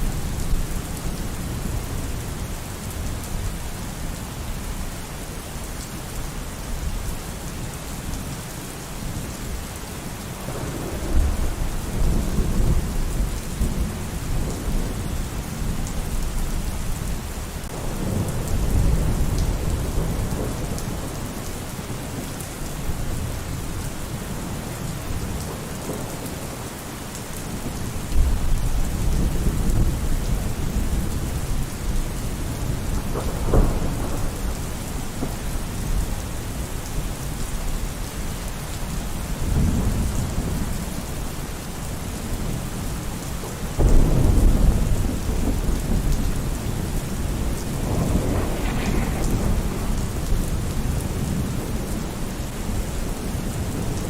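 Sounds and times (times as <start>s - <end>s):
heavy rainfall: 0.0s - 54.0s
sharp thunderclap: 10.4s - 15.0s, 32.7s - 36.2s, 43.8s - 52.1s
low rolling thunder: 10.4s - 26.6s, 27.5s - 37.9s, 39.3s - 41.0s, 42.1s - 54.0s.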